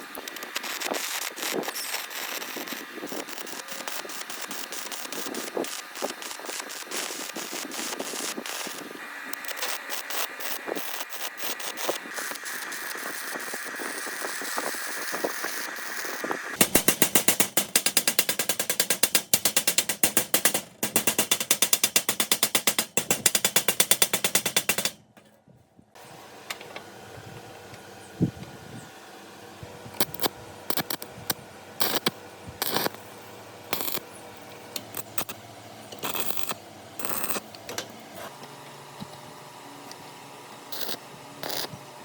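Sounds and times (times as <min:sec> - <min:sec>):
machine whine: 0:00.0 - 0:16.9
steady machine hum: 0:00.0 - 0:42.0
rapid repeated mechanical strikes: 0:16.3 - 0:25.1
scattered clicks: 0:30.0 - 0:33.0.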